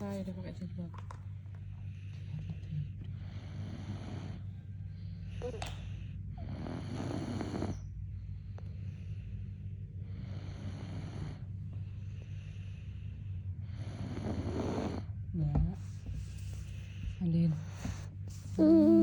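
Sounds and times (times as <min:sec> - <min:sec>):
steady low hum: 0:00.0 - 0:19.0
child snoring: 0:03.2 - 0:04.4, 0:05.0 - 0:07.8, 0:10.1 - 0:11.5, 0:13.6 - 0:15.2, 0:17.6 - 0:19.0.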